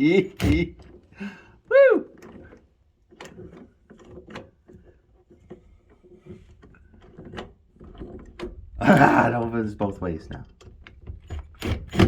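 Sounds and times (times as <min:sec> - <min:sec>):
door latch clicking: 0:00.4 - 0:00.9.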